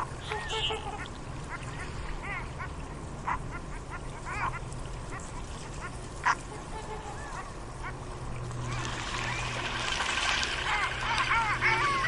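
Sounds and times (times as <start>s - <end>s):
ducks quacking: 0.0s - 8.1s, 10.4s - 12.0s
low background rumble: 0.0s - 12.0s.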